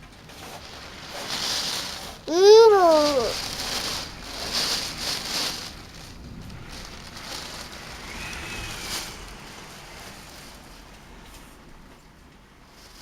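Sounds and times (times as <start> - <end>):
wind and rain hiss: 2.9 - 13.0.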